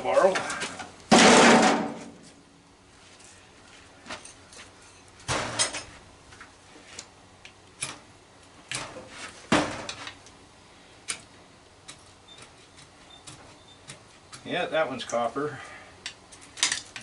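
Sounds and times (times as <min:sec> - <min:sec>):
metal parts clunking: 0:16.4 - 0:17.0.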